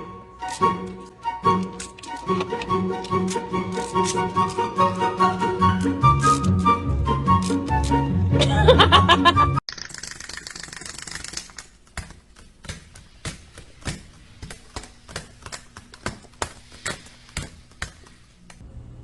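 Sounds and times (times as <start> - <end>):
music: 0.0 - 9.6.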